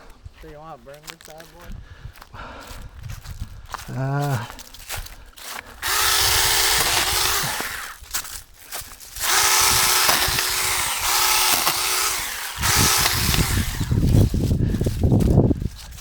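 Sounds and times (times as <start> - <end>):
electric chainsaw motor whining: 5.8 - 8.2, 8.9 - 16.0.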